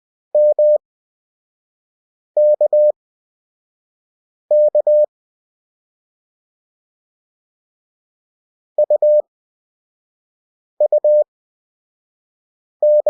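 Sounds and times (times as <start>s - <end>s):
morse code beeps: 0.4s - 0.8s, 2.4s - 2.9s, 4.5s - 5.1s, 8.8s - 9.2s, 10.8s - 11.2s.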